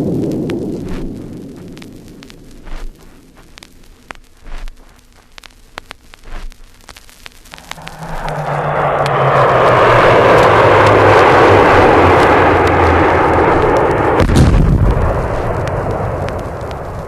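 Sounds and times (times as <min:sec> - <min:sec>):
vinyl surface clicks and pops: 0:00.4 - 0:08.4, 0:15.3 - 0:17.0
jet aircraft roaring past: 0:07.6 - 0:14.2
heavy blast: 0:07.6 - 0:17.0.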